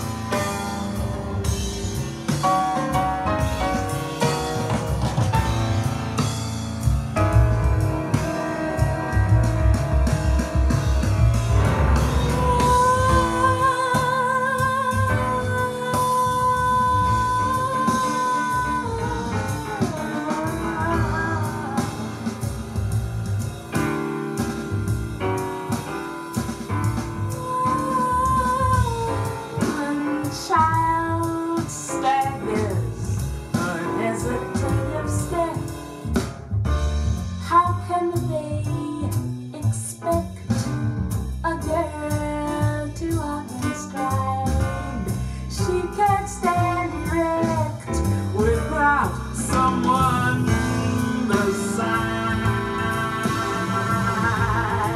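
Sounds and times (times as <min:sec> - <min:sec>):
guitar bass and drums: 0:00.0 - 0:30.0, 0:44.1 - 0:54.9
singer with vibrato: 0:45.6 - 0:54.9.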